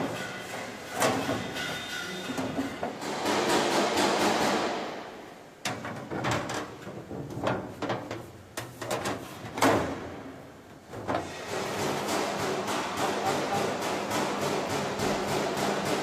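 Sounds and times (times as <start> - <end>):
sharp knocks and clacks: 0.0 - 5.0, 11.1 - 16.0.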